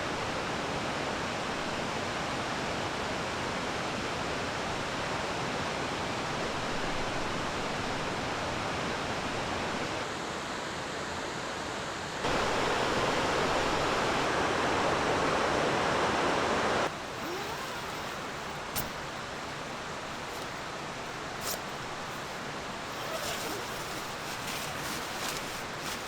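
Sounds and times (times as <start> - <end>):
stream rushing: 16.9 - 26.0.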